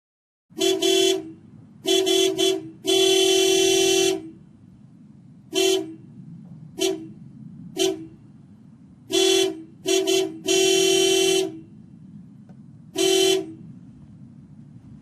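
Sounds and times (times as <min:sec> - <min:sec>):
vehicle horn honking: 0:00.5 - 0:04.4, 0:05.5 - 0:06.1, 0:06.8 - 0:08.2, 0:09.1 - 0:11.7, 0:12.9 - 0:13.7.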